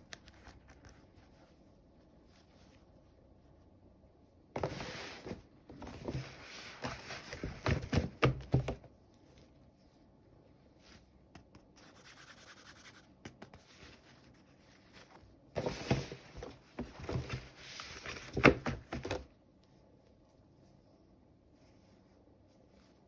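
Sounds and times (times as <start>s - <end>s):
packaging rustling and scraping: 14.8s - 19.2s.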